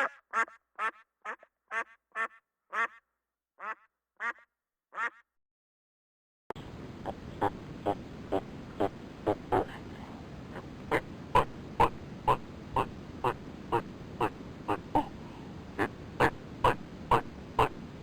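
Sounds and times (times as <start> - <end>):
animal giving short sharp calls: 6.9 - 17.9.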